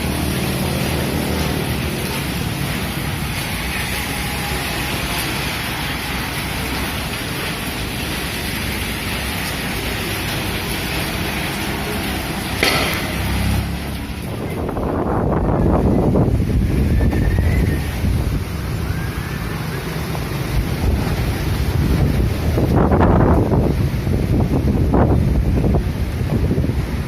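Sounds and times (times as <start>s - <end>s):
heavy rain: 0.0s - 27.0s
strong wind: 0.0s - 27.0s
sharp knock: 12.6s - 13.3s
wind buffeting microphone: 12.6s - 27.0s.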